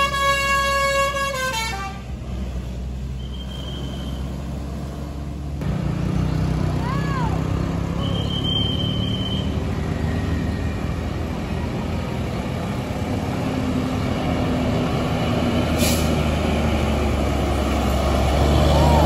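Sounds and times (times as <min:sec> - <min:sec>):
bus diesel engine running: 0:00.0 - 0:19.0
short high whistle: 0:03.2 - 0:04.3, 0:08.0 - 0:10.3.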